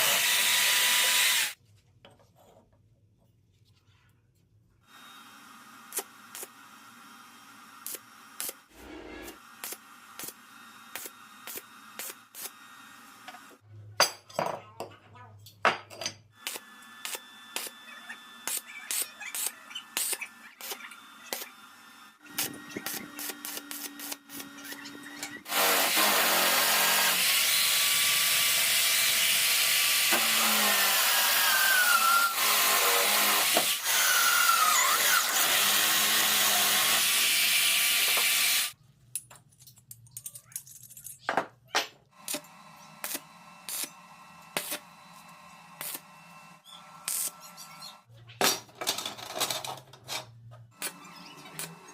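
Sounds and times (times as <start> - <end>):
power tool cutting: 0.0 - 1.6, 16.5 - 38.8
power tool motor humming: 0.0 - 1.6, 16.5 - 38.8.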